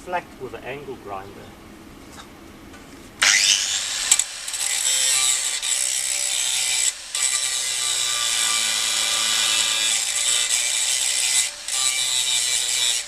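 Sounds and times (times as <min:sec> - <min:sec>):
angle grinder grinding metal: 0:03.2 - 0:13.0.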